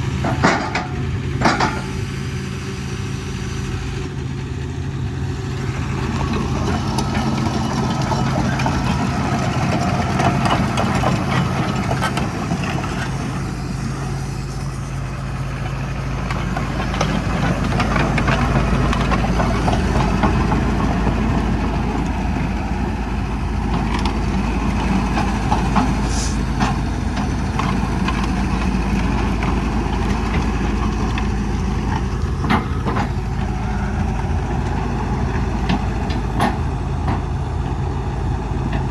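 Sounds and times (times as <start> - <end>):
excavator diesel engine running: 0.0 - 38.9
knocks and clanks: 0.2 - 2.0.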